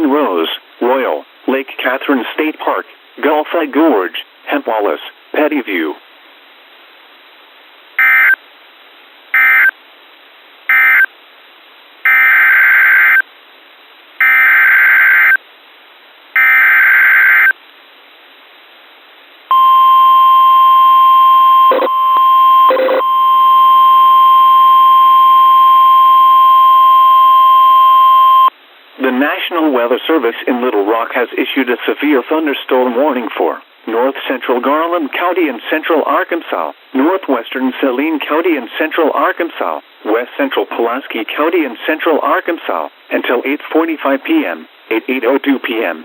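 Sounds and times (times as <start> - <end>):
steady alert tone: 19.5 - 28.5.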